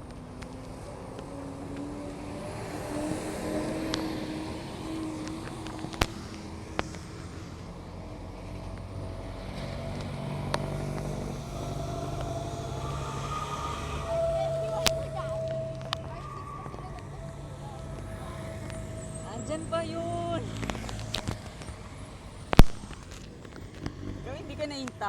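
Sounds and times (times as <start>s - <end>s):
traffic noise: 0.0s - 25.0s
vehicle engines running: 0.0s - 25.0s
sharp clicks: 20.4s - 25.0s.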